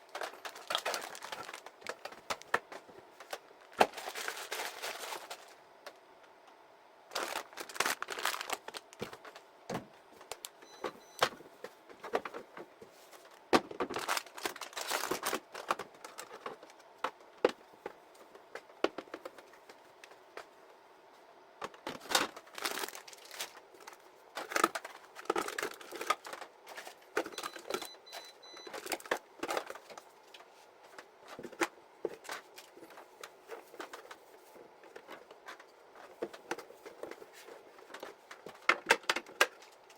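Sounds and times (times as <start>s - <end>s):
plastic packaging crinkling: 0.0s - 2.6s, 3.2s - 5.6s, 7.1s - 9.4s, 13.1s - 16.8s, 21.9s - 28.0s, 28.6s - 30.3s.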